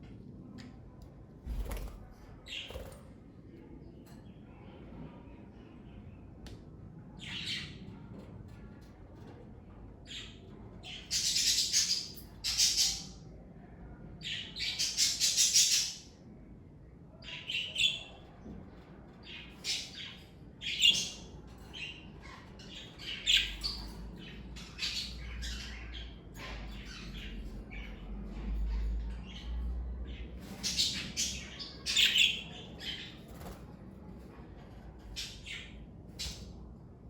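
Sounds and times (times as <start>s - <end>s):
budgerigars chirping and squawking: 30.4s - 33.1s.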